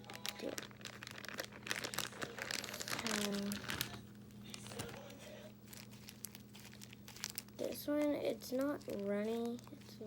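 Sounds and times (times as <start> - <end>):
plastic bag crinkling: 0.0 - 10.0.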